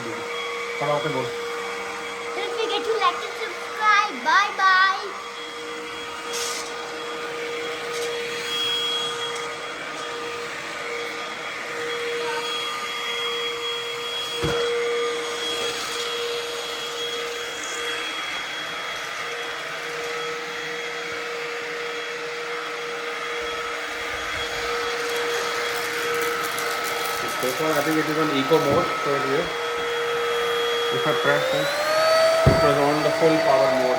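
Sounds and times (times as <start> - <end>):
stick vacuum motor whine: 0.0 - 33.9
brief knock: 32.4 - 32.8.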